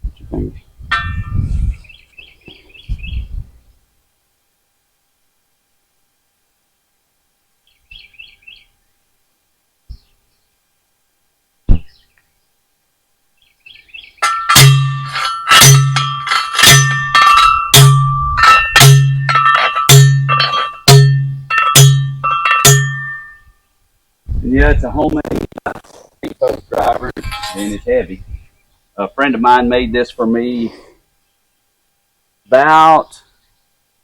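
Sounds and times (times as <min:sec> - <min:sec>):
post driver clanging on steel post: 0:14.2 - 0:23.4, 0:27.2 - 0:27.8.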